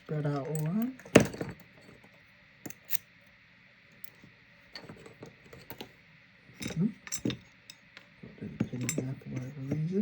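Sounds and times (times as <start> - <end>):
metallic clicks of padlock parts: 2.7 - 3.1.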